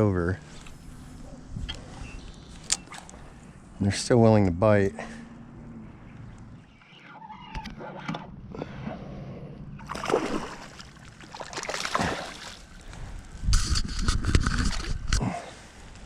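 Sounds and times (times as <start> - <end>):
water splashing beside kayak: 9.8 - 13.0.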